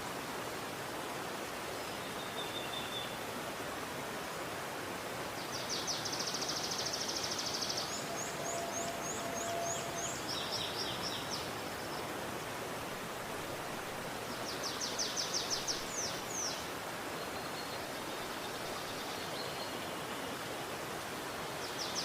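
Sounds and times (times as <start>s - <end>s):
river rushing: 0.0s - 22.0s
birds singing: 5.4s - 12.1s.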